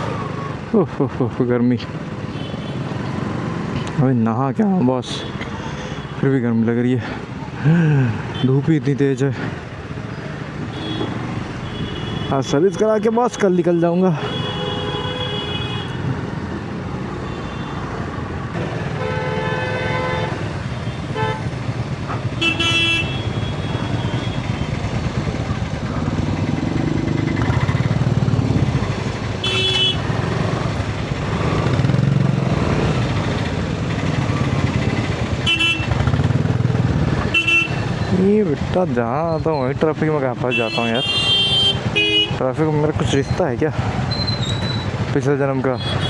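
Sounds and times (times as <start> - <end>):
traffic engine rumble: 0.0 - 46.0
vehicle horns honking: 10.7 - 13.1, 14.2 - 16.1, 18.9 - 21.6, 22.3 - 24.7, 29.4 - 30.5, 34.9 - 36.1, 37.2 - 38.1, 40.5 - 42.4, 45.8 - 46.0.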